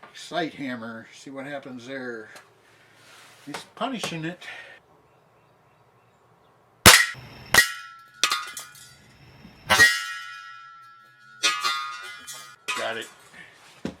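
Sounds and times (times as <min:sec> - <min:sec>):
hollow steel clangs: 0:06.9 - 0:13.2
metal rattling clatter: 0:11.4 - 0:13.0.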